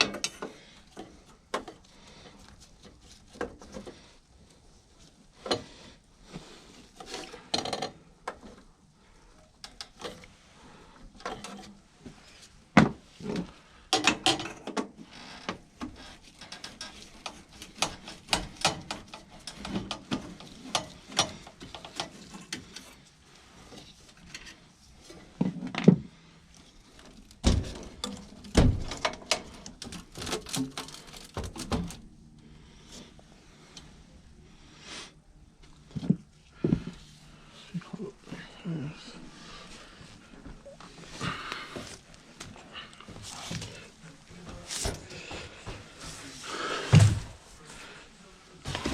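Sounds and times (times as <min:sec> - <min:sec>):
tools and metal clanking: 0:00.0 - 0:01.8, 0:13.2 - 0:15.0, 0:15.9 - 0:23.0
loud thuds: 0:46.9 - 0:47.4.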